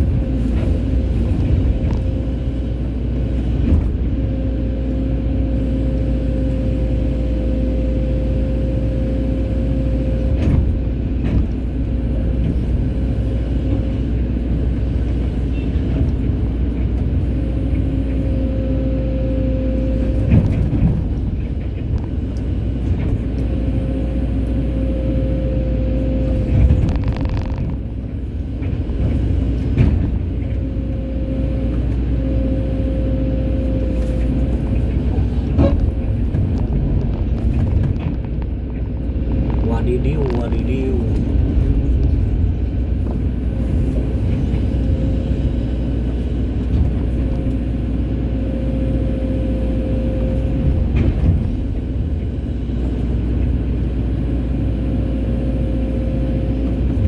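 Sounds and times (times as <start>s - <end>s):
diesel engine running: 0.0s - 57.0s.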